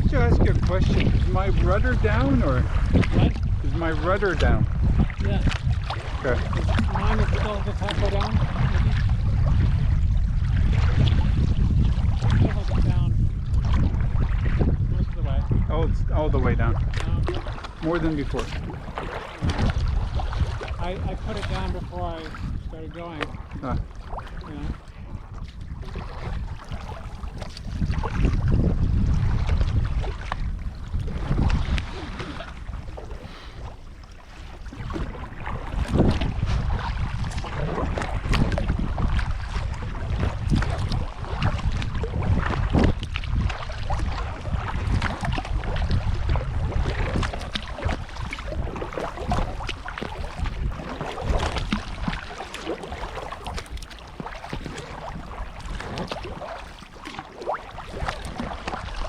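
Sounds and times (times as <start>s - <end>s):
water splashing and lapping: 0.0s - 15.7s, 16.5s - 59.0s
wind buffeting microphone: 0.0s - 59.0s.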